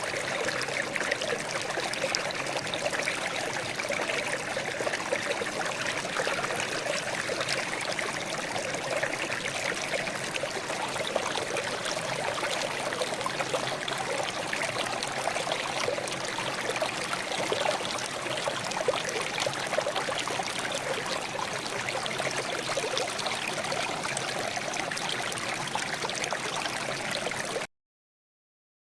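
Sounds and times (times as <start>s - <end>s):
water trickling and babbling: 0.0s - 27.7s.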